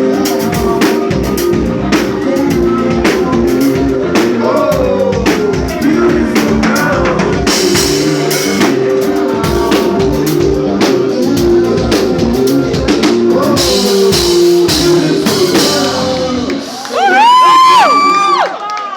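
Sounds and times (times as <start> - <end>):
drum-kit beat: 0.0 - 18.0
person singing: 0.0 - 18.4.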